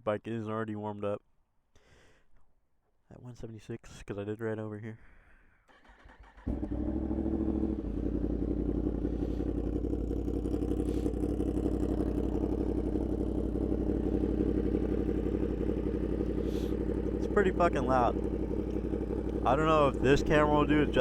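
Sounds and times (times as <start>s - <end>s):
motorcycle engine idling: 5.8s - 21.0s.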